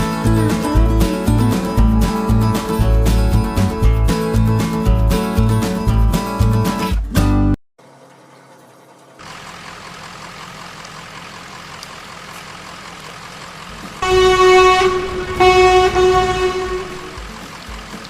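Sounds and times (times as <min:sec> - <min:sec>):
truck engine rumbling: 0:00.0 - 0:06.7, 0:09.2 - 0:18.0
truck horn honking: 0:14.0 - 0:17.4.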